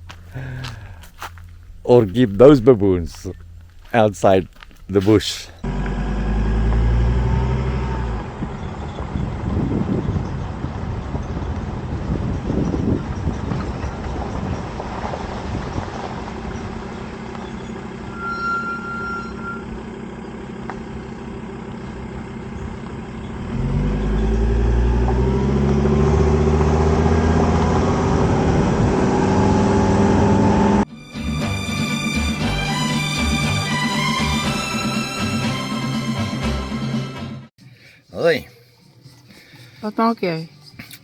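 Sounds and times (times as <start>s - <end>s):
vehicle engine running: 0.0s - 37.6s
wind noise: 8.1s - 17.2s, 27.0s - 30.8s.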